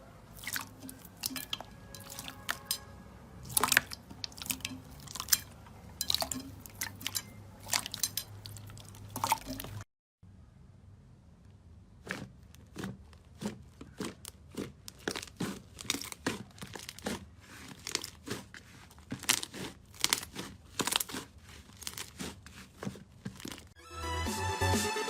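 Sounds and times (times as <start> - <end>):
slime crackling and popping: 3.4 - 5.4, 12.0 - 23.8.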